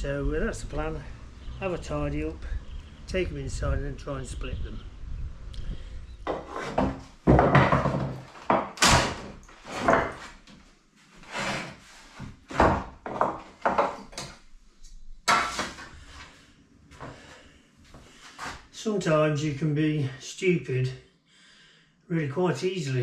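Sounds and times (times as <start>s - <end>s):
wooden boards knocking: 6.3s - 10.3s, 12.5s - 14.4s, 15.3s - 15.8s.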